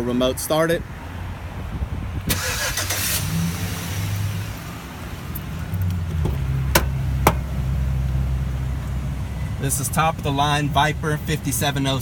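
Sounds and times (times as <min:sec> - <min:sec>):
car engine cranking and idling: 0:02.2 - 0:12.0.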